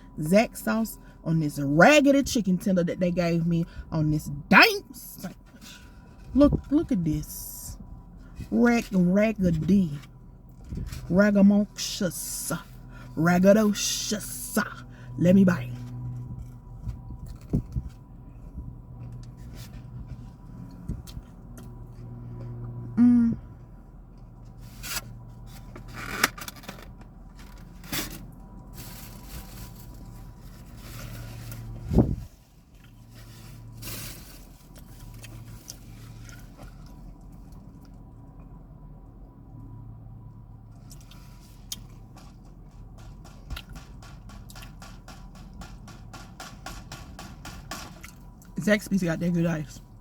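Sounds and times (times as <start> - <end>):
voiced hum: 0.0 - 24.4.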